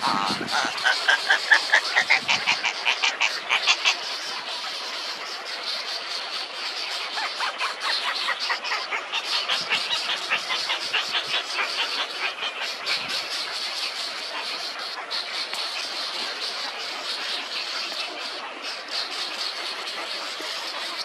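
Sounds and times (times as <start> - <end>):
nestling birds chirping: 0.0 - 4.6.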